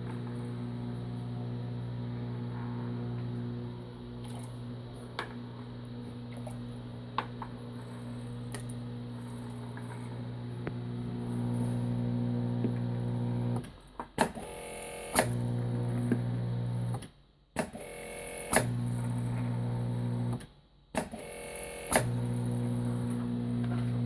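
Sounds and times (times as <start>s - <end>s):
electric motor humming: 7.7s - 13.6s, 22.0s - 24.0s.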